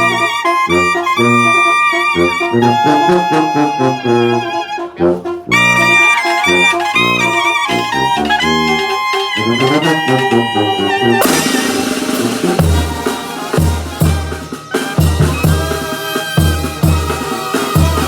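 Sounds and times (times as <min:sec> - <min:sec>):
brass and wind instruments melody: 0:00.0 - 0:18.0.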